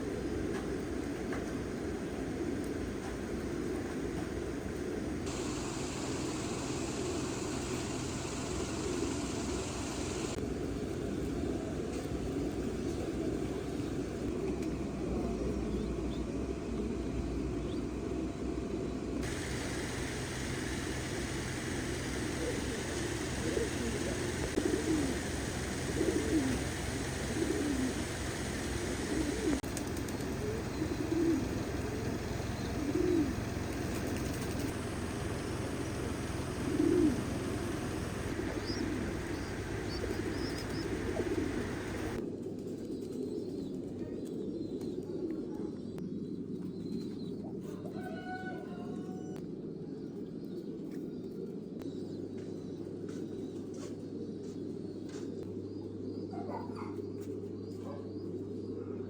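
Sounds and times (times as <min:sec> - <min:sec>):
steady background hiss: 0:00.0 - 0:42.2
pigeons cooing: 0:00.0 - 0:49.4.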